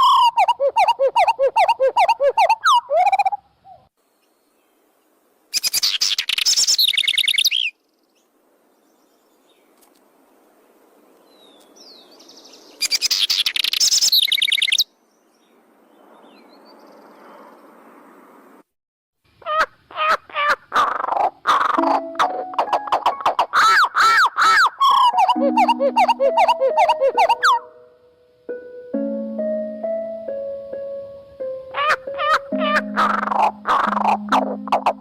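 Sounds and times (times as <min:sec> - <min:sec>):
bird chirping: 0:00.0 - 0:09.8, 0:11.1 - 0:17.6, 0:21.0 - 0:28.0, 0:29.9 - 0:35.0
faint hiss: 0:04.0 - 0:15.9.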